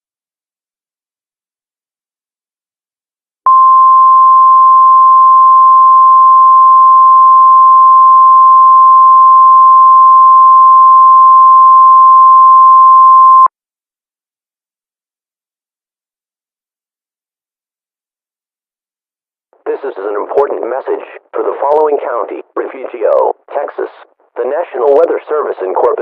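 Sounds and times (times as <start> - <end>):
steady single-pitched alarm beep: 3.5 - 13.5.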